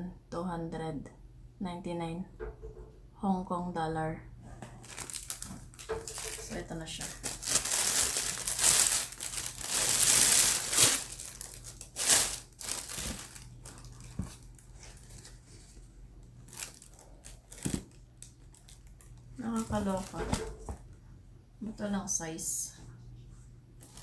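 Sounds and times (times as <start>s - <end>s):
packaging crinkling and tearing: 4.7s - 15.4s, 16.4s - 20.2s, 23.8s - 24.0s.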